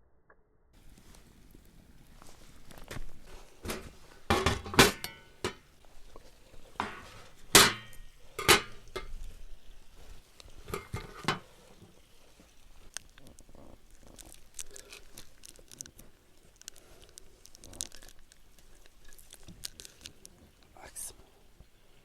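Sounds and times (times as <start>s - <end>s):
cookware knocking and clinking: 3.7s - 5.7s, 6.8s - 9.2s, 10.6s - 11.4s.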